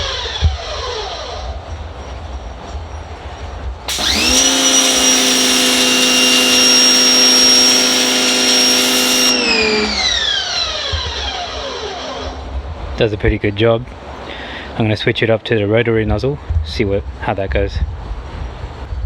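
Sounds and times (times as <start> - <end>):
water spray hissing: 3.9 - 9.9
pressure washer motor running: 3.9 - 10.4.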